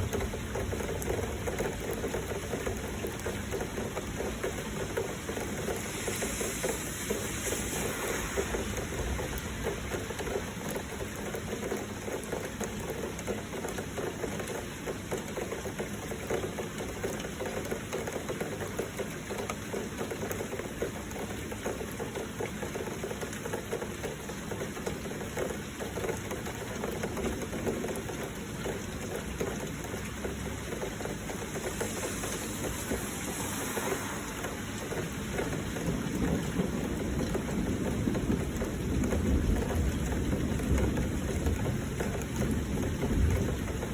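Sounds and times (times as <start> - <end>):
heavy rain falling: 0.0 - 43.9.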